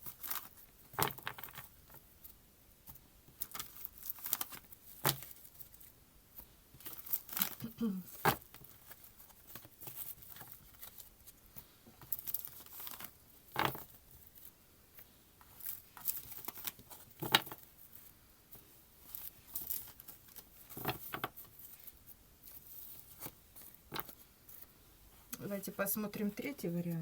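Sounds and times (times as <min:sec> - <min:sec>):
cards rustling: 0:06.8 - 0:14.4, 0:15.5 - 0:24.7.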